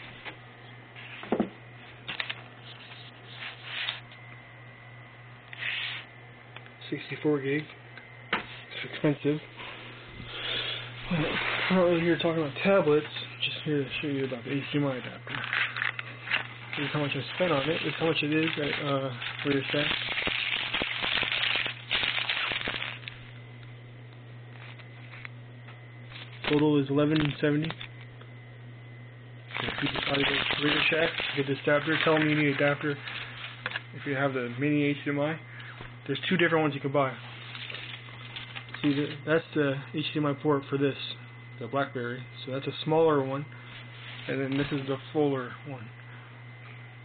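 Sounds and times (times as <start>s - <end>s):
faint high whine: 0.0s - 47.0s
low electrical hum: 0.0s - 47.0s
crackling handling noise: 0.1s - 4.4s, 11.0s - 28.3s, 29.5s - 40.1s, 43.6s - 45.6s.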